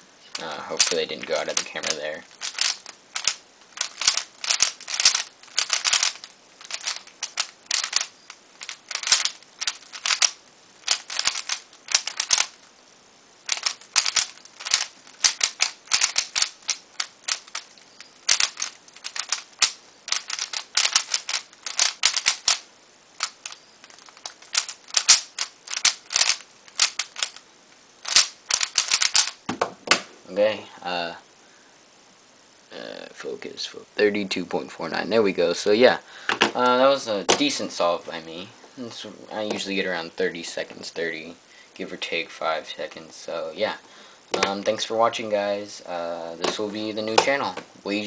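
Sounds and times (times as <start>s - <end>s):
plastic puzzle cube clicking: 0.3s - 12.6s, 13.5s - 27.4s, 28.0s - 29.4s.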